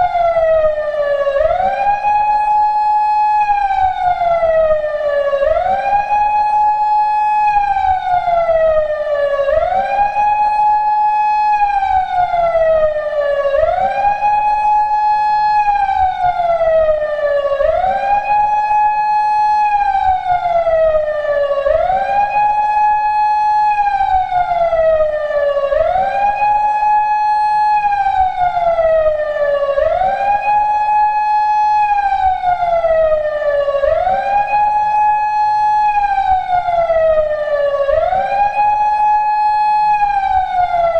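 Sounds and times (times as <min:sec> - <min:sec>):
electronic siren wail: 0:00.0 - 0:40.9.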